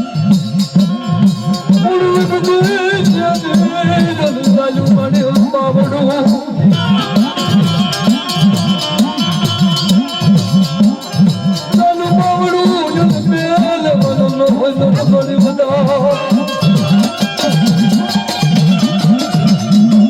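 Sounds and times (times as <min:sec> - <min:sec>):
fast percussion rhythm: 0:00.0 - 0:20.0
ornamented melody line: 0:06.7 - 0:20.0.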